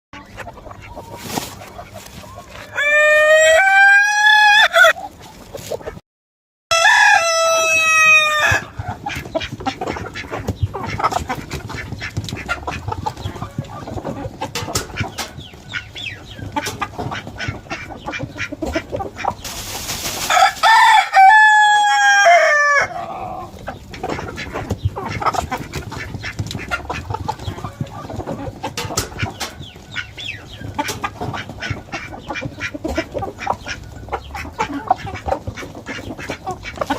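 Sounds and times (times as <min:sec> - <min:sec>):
chickens clucking: 0:00.2 - 0:06.0, 0:06.7 - 0:36.9
roosters crowing: 0:02.3 - 0:05.0, 0:06.7 - 0:09.0, 0:20.2 - 0:23.7.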